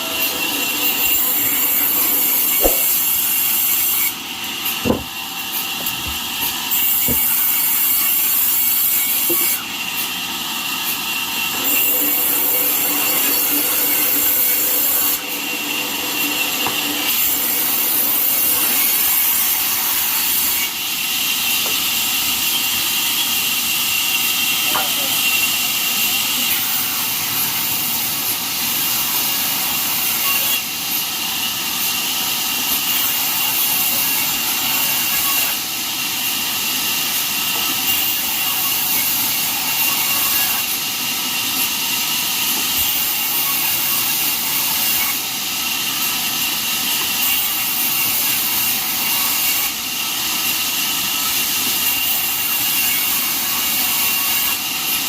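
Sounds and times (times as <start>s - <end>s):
high-pitched whine: 0.0s - 4.1s, 11.4s - 19.2s
band sawmill running: 0.0s - 55.0s.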